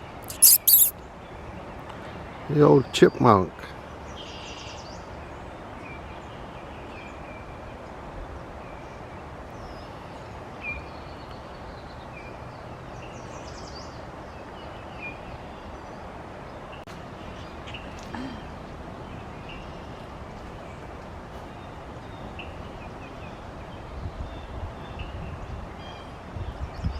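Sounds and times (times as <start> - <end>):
background hiss: 0.3 - 0.9
faint bird chirps: 0.3 - 0.9
rapid high bird trills: 0.3 - 0.9.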